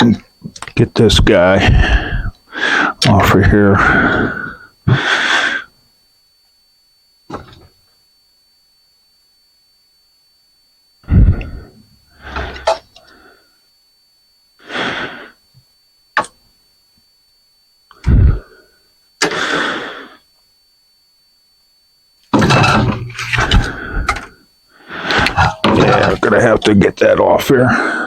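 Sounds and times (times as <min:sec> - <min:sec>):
sharp click: 0:16.2 - 0:16.4
metal parts scraping and knocking: 0:22.4 - 0:24.3, 0:25.1 - 0:26.3
metal parts rattling: 0:25.1 - 0:26.3.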